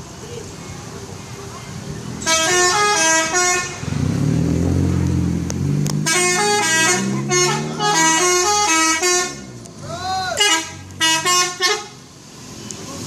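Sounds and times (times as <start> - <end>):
bus musical horn tune: 2.2 - 3.8, 6.0 - 9.5, 10.4 - 12.0.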